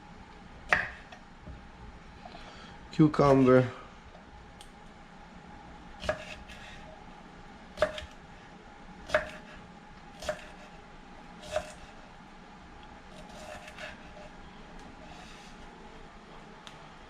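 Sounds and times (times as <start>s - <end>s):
knife slicing cucumber: 6.0s - 6.8s, 7.8s - 8.2s, 9.1s - 9.6s, 10.2s - 10.7s, 11.4s - 11.9s, 13.2s - 14.3s.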